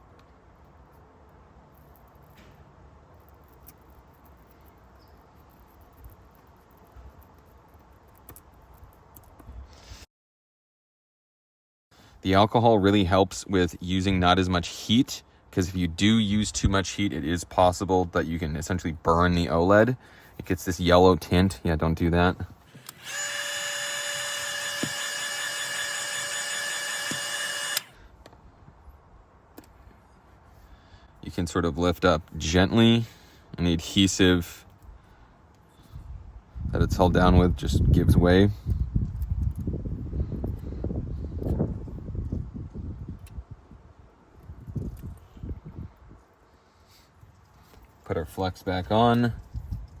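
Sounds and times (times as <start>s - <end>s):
hot air gun hissing with high whine: 22.7s - 28.0s
small tool clicks: 22.7s - 28.0s.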